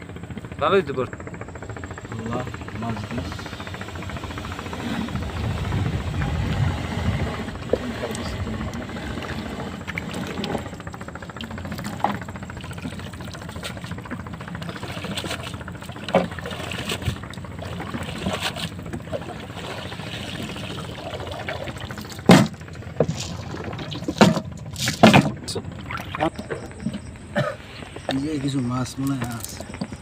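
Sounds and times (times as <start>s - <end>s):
water pouring and trickling: 7.8s - 27.0s
sharp knocks: 22.2s - 23.2s.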